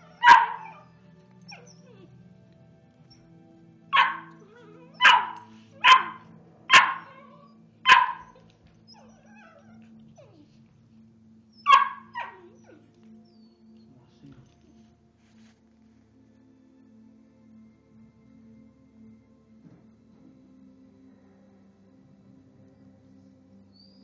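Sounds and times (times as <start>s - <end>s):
dog barking: 0.0s - 0.9s, 3.9s - 9.7s, 11.6s - 12.8s.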